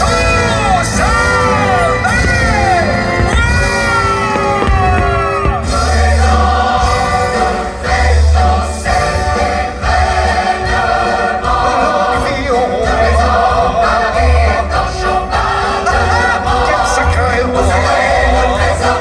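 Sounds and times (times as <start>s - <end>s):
choir singing: 0.0s - 19.0s
orchestral accompaniment: 0.0s - 19.0s
heavy pulsing bass: 0.3s - 15.4s.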